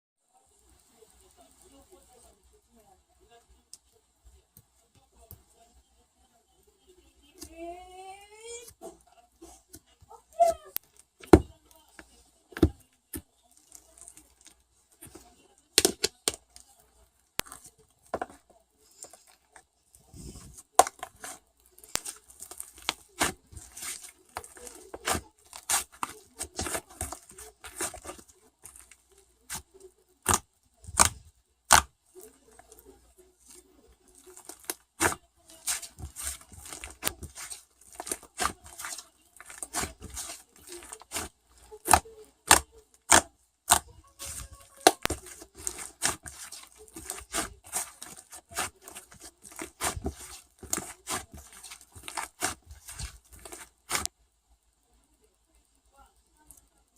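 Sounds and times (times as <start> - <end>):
scratchy rustling: 17.5 - 30.4, 32.2 - 54.1.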